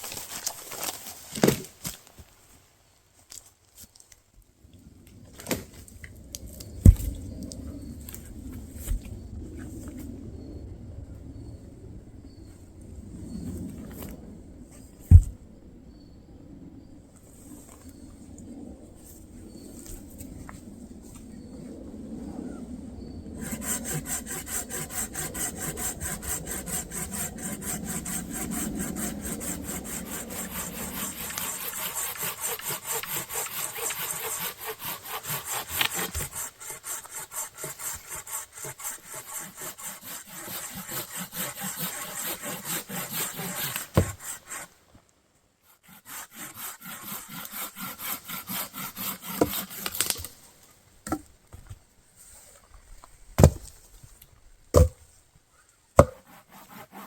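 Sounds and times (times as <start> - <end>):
hand saw cutting wood: 23.4 - 44.7, 45.7 - 50.3, 56.0 - 57.0
sharp knocks: 56.0 - 56.2.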